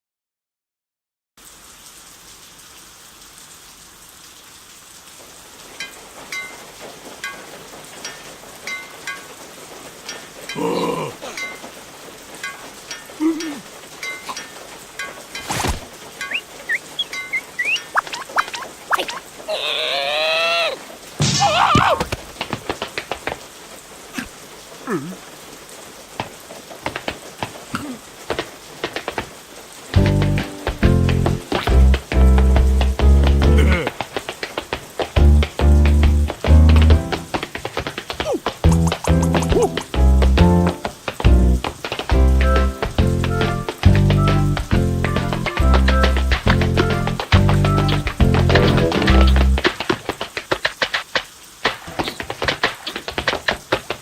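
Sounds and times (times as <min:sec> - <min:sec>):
rain hissing: 0:01.4 - 0:54.0
small drips and taps: 0:12.4 - 0:19.3, 0:26.2 - 0:54.0
high squeaky chirps: 0:16.2 - 0:20.8
warbling cartoon cry: 0:16.3 - 0:20.8, 0:21.4 - 0:22.0
high wavering cartoon cry: 0:16.7 - 0:20.8
music: 0:30.0 - 0:33.8, 0:35.2 - 0:37.4, 0:38.6 - 0:49.6.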